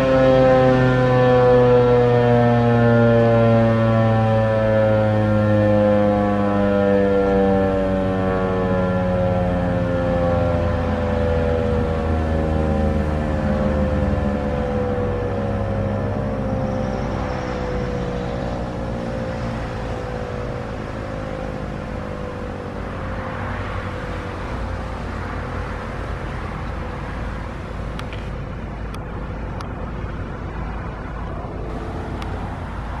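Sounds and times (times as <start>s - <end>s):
rotating siren winding down: 0.0s - 28.0s
steady low rumble: 10.7s - 33.0s.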